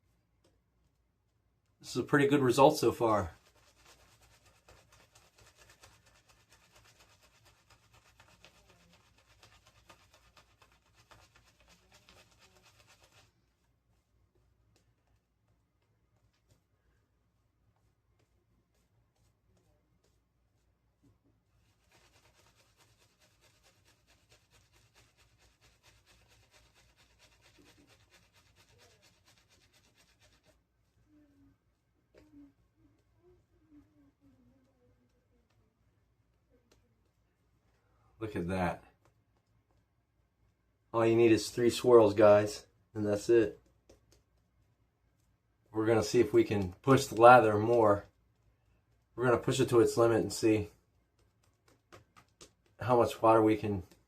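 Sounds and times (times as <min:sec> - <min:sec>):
shaving brush swishing lather: 0:01.8 - 0:14.8, 0:21.5 - 0:31.1, 0:41.0 - 0:44.6, 0:45.2 - 0:48.2, 0:48.9 - 0:54.0.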